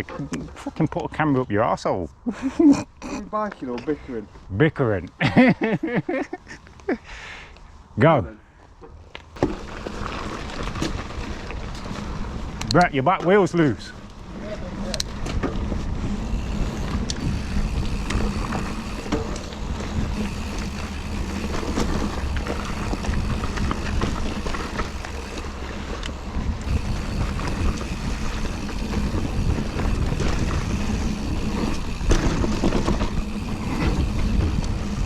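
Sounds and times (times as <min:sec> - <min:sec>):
bike rattling over bumps: 0:09.3 - 0:35.0
bike tyre rumble on dirt: 0:09.3 - 0:35.0
wind on microphone: 0:14.2 - 0:35.0.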